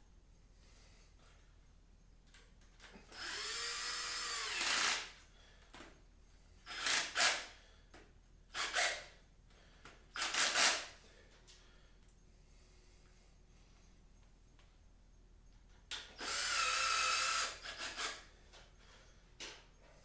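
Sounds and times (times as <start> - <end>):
power drill driving screws: 3.1 - 5.2, 6.7 - 7.6, 8.6 - 9.1, 10.2 - 10.9, 16.2 - 18.3.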